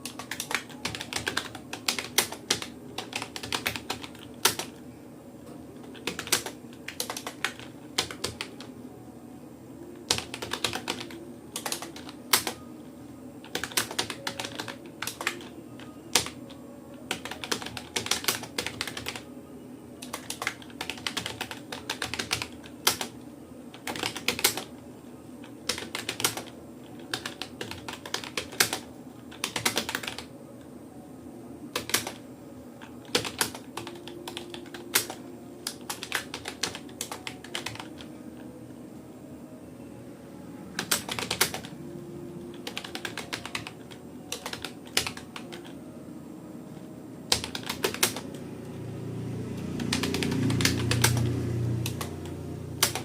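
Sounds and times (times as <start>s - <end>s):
computer keyboard typing: 0.0s - 4.8s, 5.8s - 8.7s, 10.0s - 12.8s, 13.4s - 19.3s, 20.0s - 24.8s, 25.4s - 30.3s, 31.7s - 38.2s, 40.7s - 41.8s, 42.4s - 45.8s, 47.3s - 48.5s, 49.6s - 53.0s.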